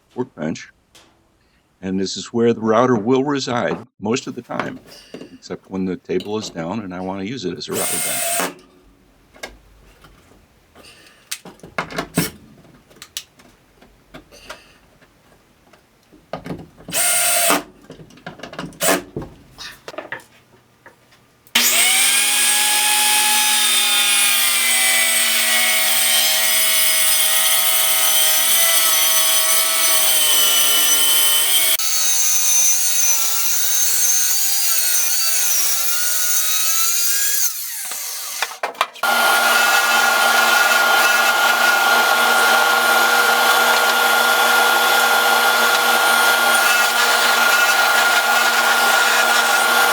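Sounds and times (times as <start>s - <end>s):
woodworking power tool whining: 7.7s - 8.6s, 16.9s - 17.6s, 21.6s - 49.9s
wood and tools knocking: 9.3s - 21.0s, 37.9s - 49.9s.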